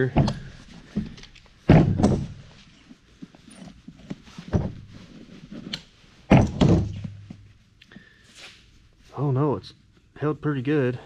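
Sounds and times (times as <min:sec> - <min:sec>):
boots knocking and thumping: 0:00.0 - 0:02.5, 0:04.0 - 0:05.0, 0:06.2 - 0:07.5.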